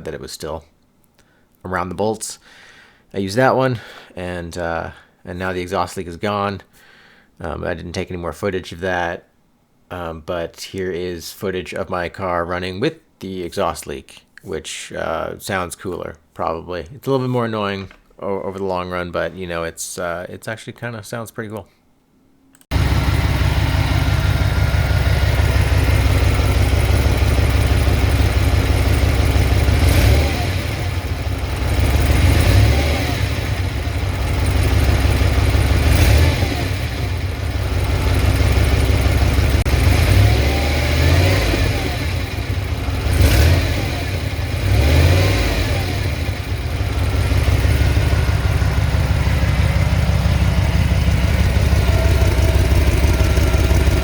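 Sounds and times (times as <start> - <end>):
car engine idling and revving: 22.7 - 54.0.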